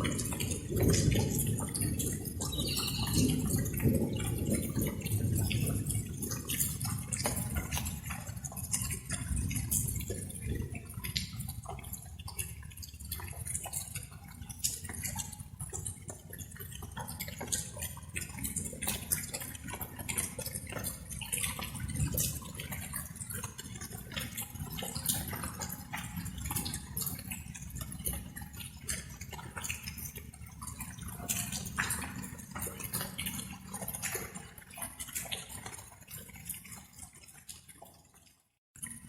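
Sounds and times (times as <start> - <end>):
light rain dripping: 0.0 - 39.0.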